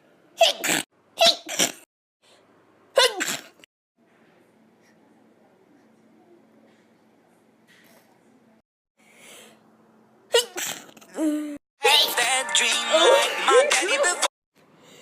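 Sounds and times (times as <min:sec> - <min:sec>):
person sneezing: 0:00.4 - 0:01.9, 0:03.0 - 0:03.7, 0:10.3 - 0:11.5.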